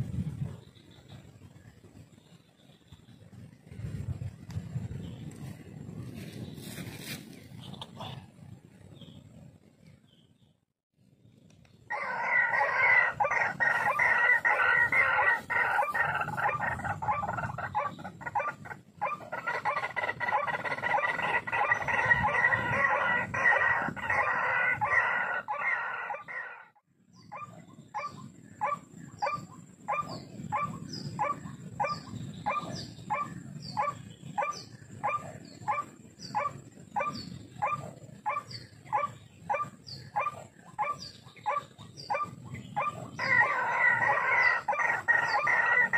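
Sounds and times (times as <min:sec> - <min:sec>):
bird harsh croaking calls: 0:11.9 - 0:45.9.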